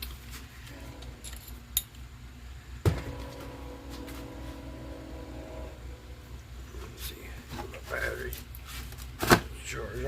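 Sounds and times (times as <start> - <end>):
metal tools clinking: 1.2 - 1.9.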